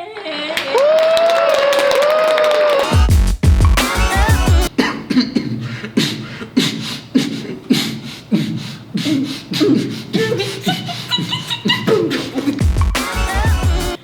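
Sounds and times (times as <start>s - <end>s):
rhythmic beatbox-style coughs: 3.6s - 14.0s.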